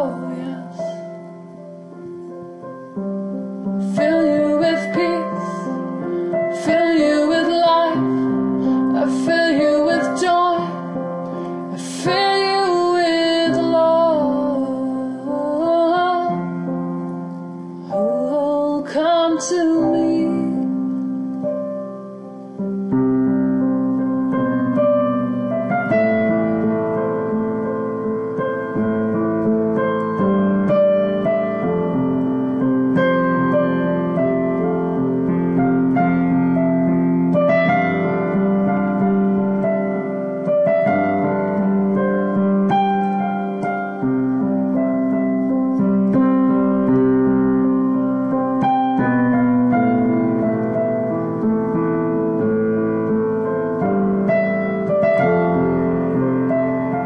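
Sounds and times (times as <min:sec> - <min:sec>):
slow piano chords: 0:00.0 - 0:57.0.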